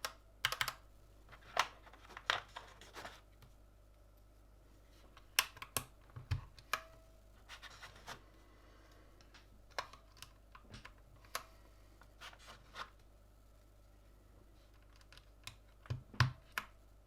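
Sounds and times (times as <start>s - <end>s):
mechanical keyboard clicks: 0.0s - 0.8s.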